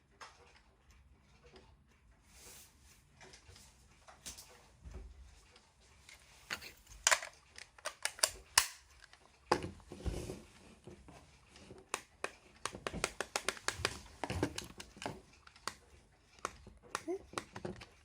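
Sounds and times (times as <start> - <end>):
sharp clicks and taps: 11.9 - 15.8.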